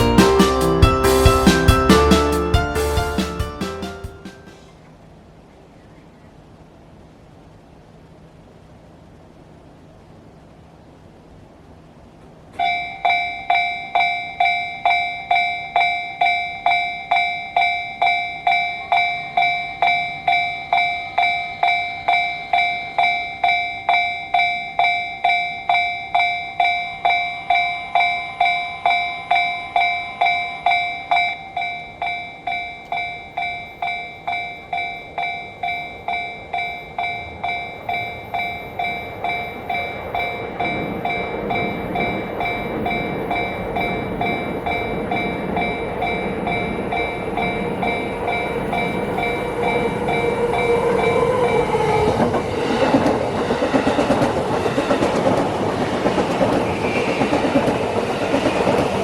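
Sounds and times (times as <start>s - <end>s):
approaching train: 0.0s - 59.0s
level crossing warning bell: 12.5s - 59.0s.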